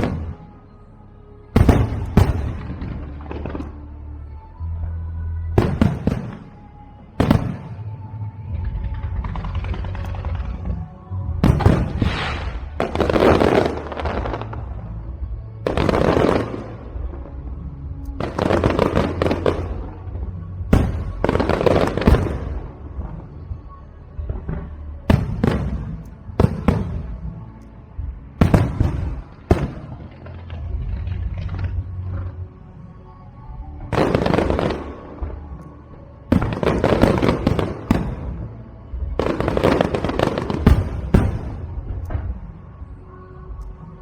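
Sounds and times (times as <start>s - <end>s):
fireworks bursting and crackling: 7.2s - 7.9s, 8.7s - 14.8s, 15.7s - 23.5s, 28.4s - 32.3s, 33.9s - 35.6s, 36.2s - 42.6s.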